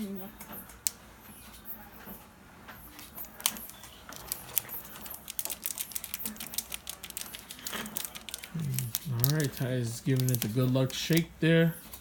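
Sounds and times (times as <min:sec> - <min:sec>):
foil pack crinkling and clicking: 0:03.0 - 0:11.3.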